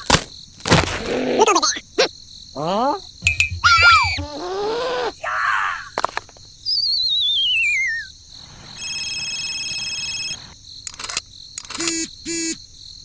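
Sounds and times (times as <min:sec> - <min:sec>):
clicks: 0:10.9 - 0:12.1.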